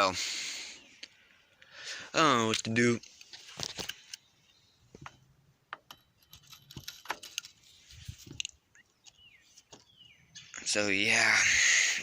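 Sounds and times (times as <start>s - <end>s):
light metallic clinks and knocks: 5.0s - 8.5s.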